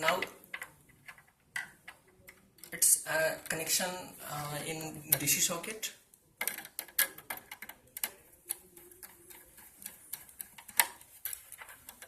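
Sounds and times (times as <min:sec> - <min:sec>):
small clicks and taps of wire: 0:06.4 - 0:12.0.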